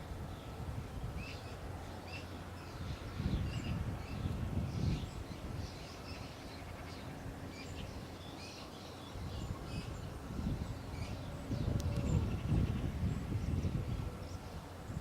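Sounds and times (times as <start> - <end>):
small birds chirping: 0.2 - 15.0
steady low rumble: 9.0 - 15.0.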